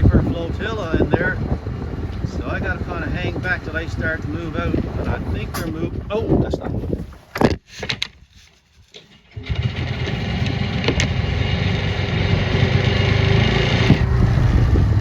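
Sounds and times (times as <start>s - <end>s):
outboard motor starting and running: 9.0s - 15.0s.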